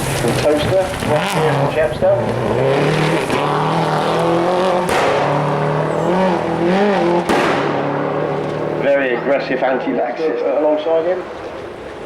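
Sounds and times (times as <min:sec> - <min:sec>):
rally car engine revving: 0:00.0 - 0:12.0
anti-lag bangs: 0:04.8 - 0:05.5, 0:07.0 - 0:09.2.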